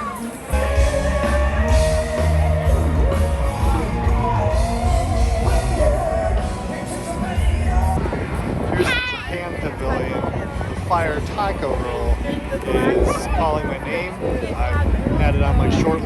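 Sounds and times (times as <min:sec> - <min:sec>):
rock music with singer: 0:00.0 - 0:16.0
heavy bass beat: 0:00.5 - 0:09.0.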